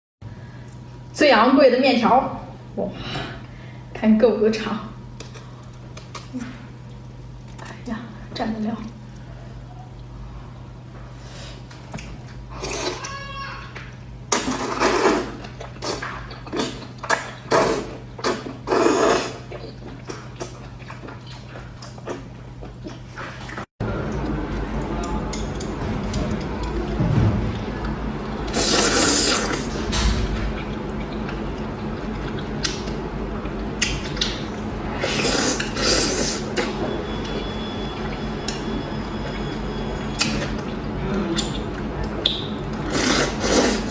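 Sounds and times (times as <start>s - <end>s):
steady low hum: 0.2s - 43.9s
wet eating sounds: 4.9s - 43.9s
wet bites chews and slurps: 28.5s - 36.8s, 40.1s - 43.9s
clicky mouth noises: 41.1s - 42.5s.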